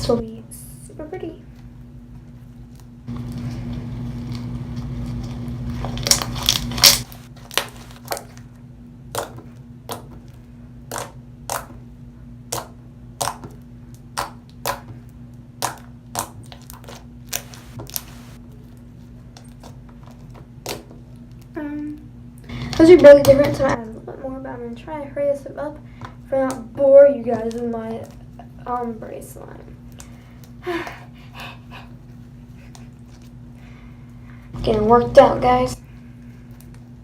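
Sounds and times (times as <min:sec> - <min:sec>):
slime rustling: 0:01.6 - 0:11.8, 0:14.0 - 0:21.5, 0:27.1 - 0:30.9.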